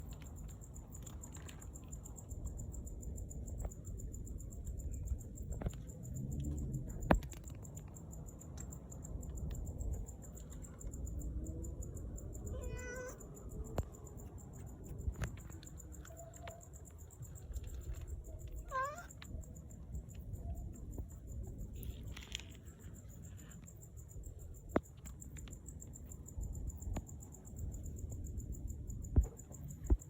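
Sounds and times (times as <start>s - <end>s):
steady low rumble: 1.8s - 16.2s
cat meowing: 12.5s - 13.2s, 18.6s - 19.2s.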